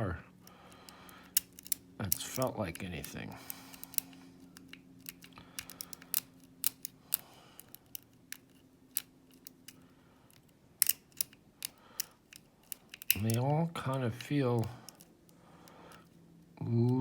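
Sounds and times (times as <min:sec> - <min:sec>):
lock pick clicking in padlock: 0:01.2 - 0:02.5, 0:03.5 - 0:13.4, 0:14.2 - 0:15.1.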